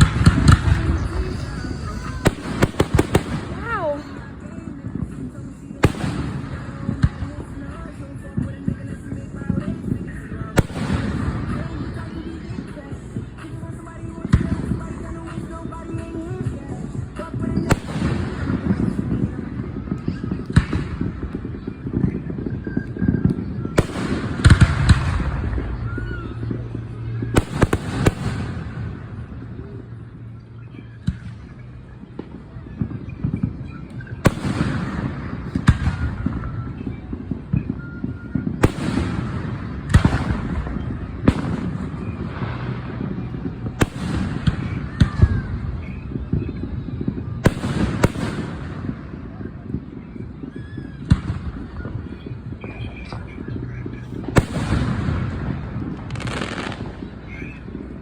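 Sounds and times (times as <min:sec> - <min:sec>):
low rumble: 0:00.0 - 0:13.3
fireworks bangs: 0:00.0 - 0:58.0.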